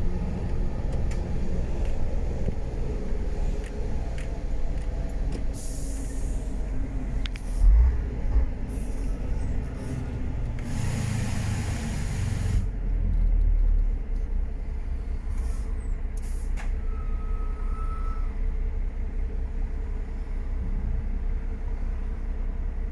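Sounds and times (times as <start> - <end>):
truck diesel engine running: 0.0 - 13.0.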